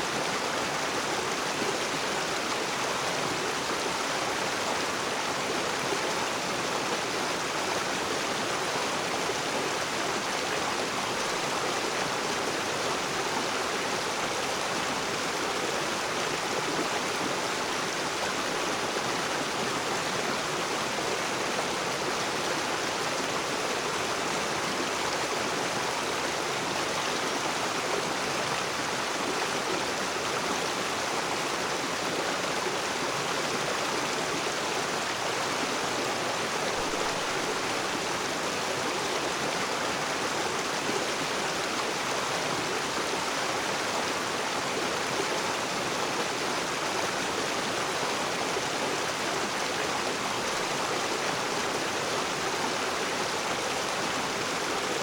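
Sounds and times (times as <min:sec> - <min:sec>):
river water rushing over rocks: 0:00.0 - 0:55.0.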